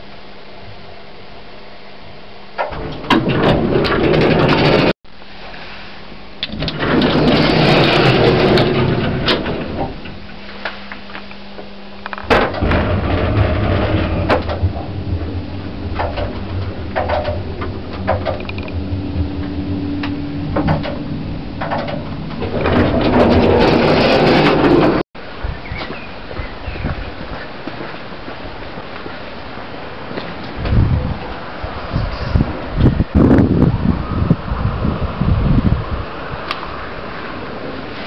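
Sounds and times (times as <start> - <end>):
lift motor humming: 2.6 - 5.0, 6.4 - 25.0
scattered clicks: 16.0 - 18.8.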